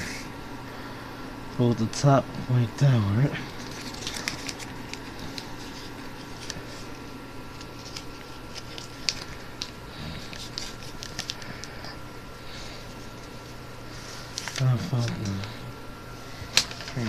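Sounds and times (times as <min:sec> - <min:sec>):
paper being folded and creased: 0:03.5 - 0:11.7, 0:13.2 - 0:15.5, 0:16.4 - 0:17.0.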